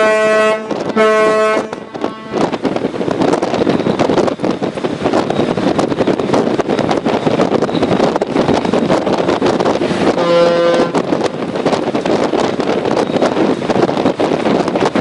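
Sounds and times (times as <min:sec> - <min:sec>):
ship whistle blast: 0:00.0 - 0:02.4
sea and ship noise: 0:00.0 - 0:15.0
wind buffeting microphone: 0:00.0 - 0:15.0.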